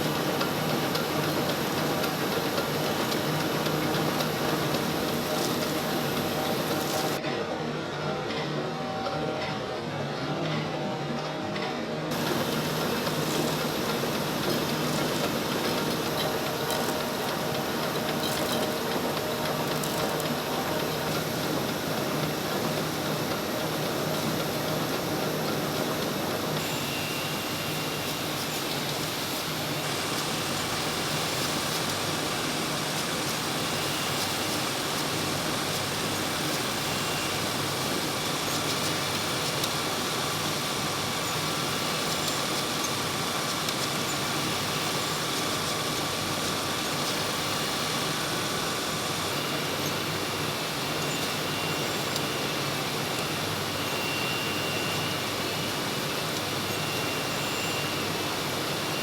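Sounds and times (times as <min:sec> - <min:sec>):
machines cutting plastic: 0:00.0 - 0:07.2, 0:12.1 - 0:59.0
faint high whine: 0:12.1 - 0:38.6, 0:44.0 - 0:59.0.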